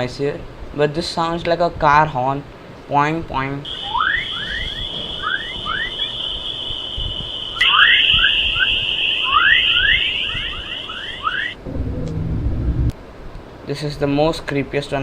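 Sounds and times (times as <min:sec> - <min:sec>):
high hiss-like tone: 0:03.7 - 0:11.6
short rising chirps: 0:03.7 - 0:11.6.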